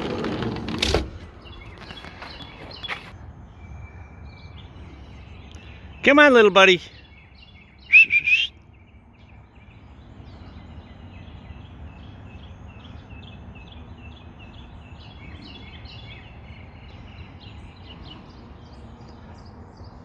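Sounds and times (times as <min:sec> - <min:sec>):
wild birds chirping: 0:00.0 - 0:20.0.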